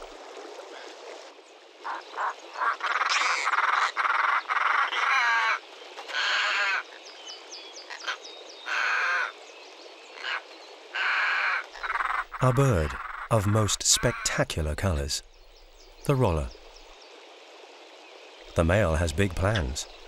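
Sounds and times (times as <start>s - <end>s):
birds giving harsh rasping calls: 11.0s - 16.9s.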